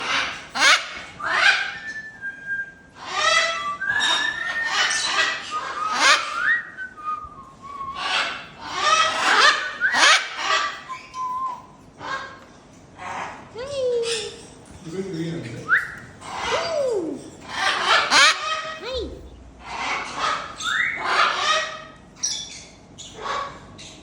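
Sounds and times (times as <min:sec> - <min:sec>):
macaws squawking: 0:00.0 - 0:01.9, 0:08.0 - 0:11.0, 0:17.5 - 0:22.4.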